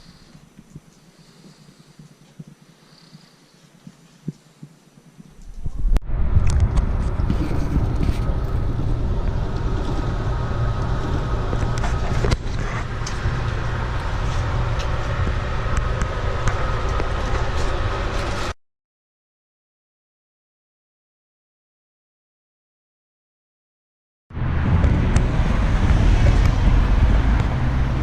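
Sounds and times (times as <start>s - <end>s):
motor vehicle rumble: 5.4s - 18.6s, 24.3s - 28.0s.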